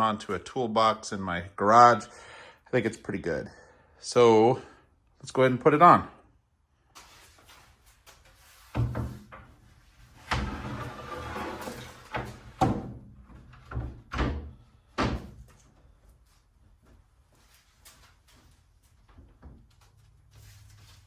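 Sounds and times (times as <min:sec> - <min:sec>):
wooden lid scraping slide: 0:10.3 - 0:12.4.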